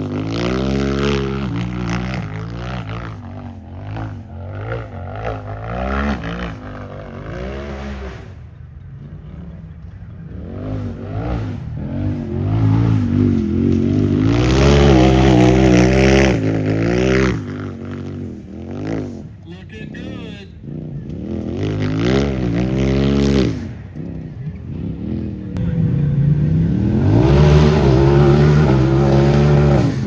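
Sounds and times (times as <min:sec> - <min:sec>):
utility vehicle engine revving: 0:00.0 - 0:30.0.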